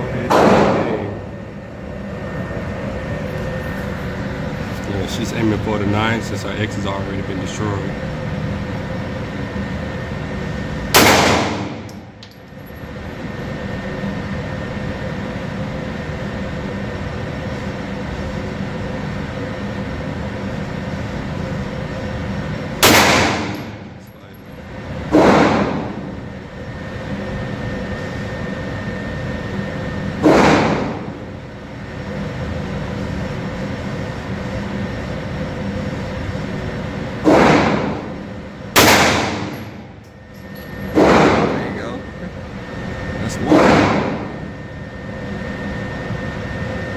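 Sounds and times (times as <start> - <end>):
steady hum: 0.0 - 46.9
pistol shots: 11.0 - 11.9, 22.8 - 23.8, 30.2 - 31.0, 37.2 - 38.1, 38.8 - 39.8.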